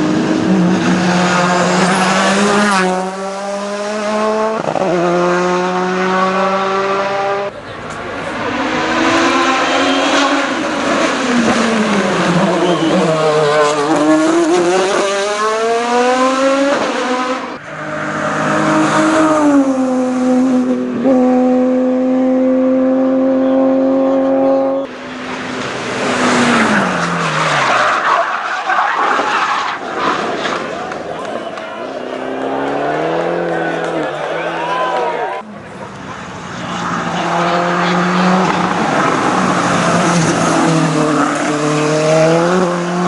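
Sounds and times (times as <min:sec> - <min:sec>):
race car engines at high revs: 0:00.0 - 0:43.0.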